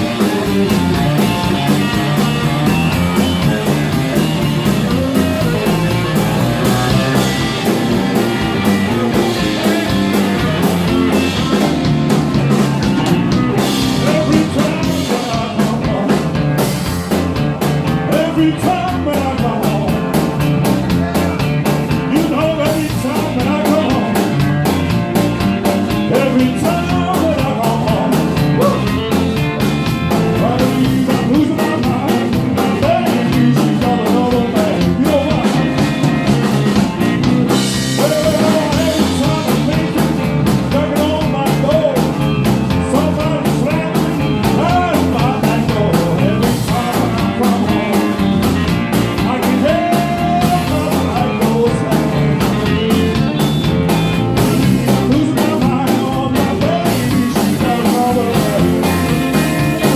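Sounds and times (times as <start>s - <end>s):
blues-rock band playing: 0.0s - 59.9s
lead guitar bending notes: 0.0s - 59.9s.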